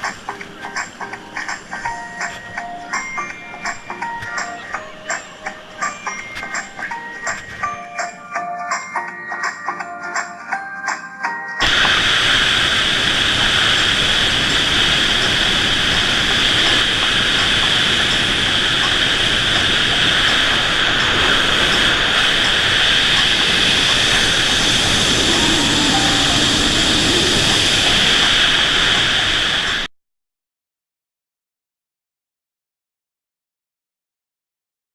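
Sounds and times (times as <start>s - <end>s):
loud rushing noise: 11.6s - 29.9s.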